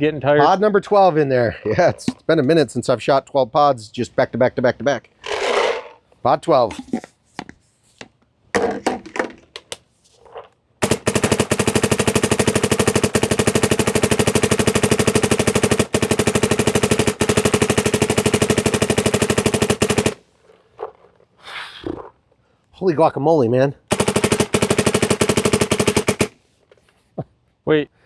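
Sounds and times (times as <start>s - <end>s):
paintball gun rapid firing: 10.8s - 20.2s, 23.9s - 26.4s.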